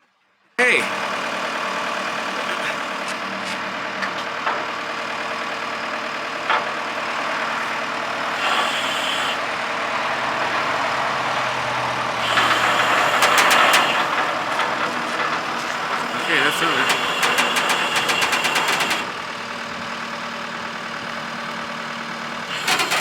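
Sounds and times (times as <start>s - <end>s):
loader engine running: 0.6s - 23.0s
hiss: 8.4s - 9.4s.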